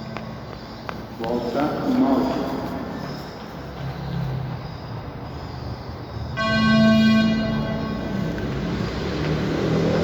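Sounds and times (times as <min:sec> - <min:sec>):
low electronic beep: 0:06.2 - 0:08.9.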